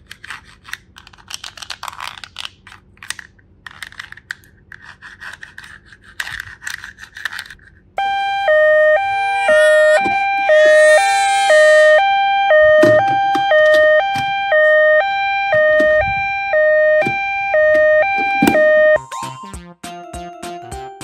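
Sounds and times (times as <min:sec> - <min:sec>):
toy ambulance siren: 0:08.0 - 0:19.4.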